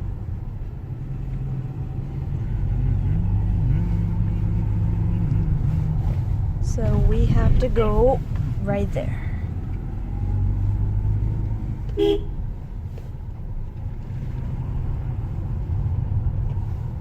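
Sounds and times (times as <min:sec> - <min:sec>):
car engine and road rumble: 0:00.0 - 0:17.0
car horn toot: 0:11.9 - 0:12.4.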